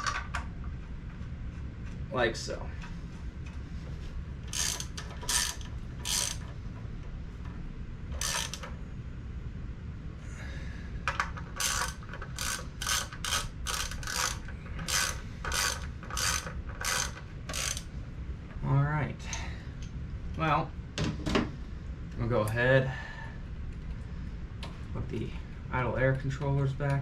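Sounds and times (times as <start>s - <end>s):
ratchet wrench clicking: 4.5s - 6.5s, 8.2s - 8.7s, 11.6s - 17.9s.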